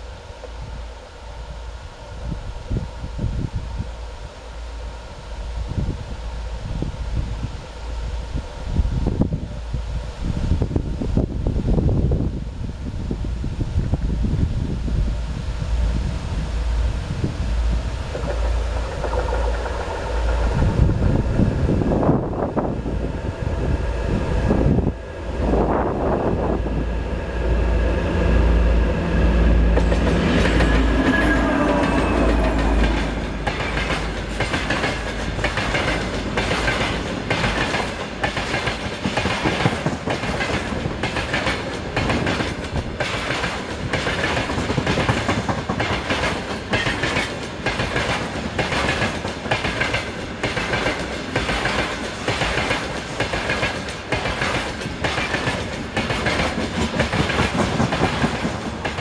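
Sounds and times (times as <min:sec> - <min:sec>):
train rumbling: 0:00.0 - 0:59.0
train wheels clickety-clack: 0:18.0 - 0:22.5, 0:29.6 - 0:59.0.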